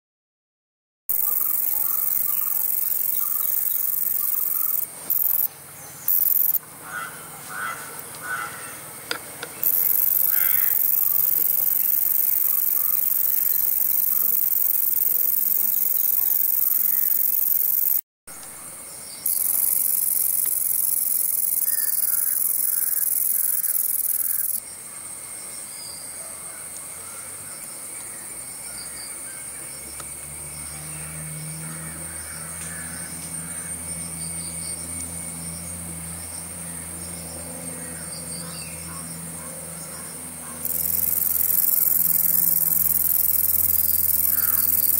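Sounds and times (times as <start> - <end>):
katydid buzzing: 1.1 - 5.5, 6.1 - 6.6, 9.6 - 18.0, 19.2 - 24.6, 40.6 - 44.9.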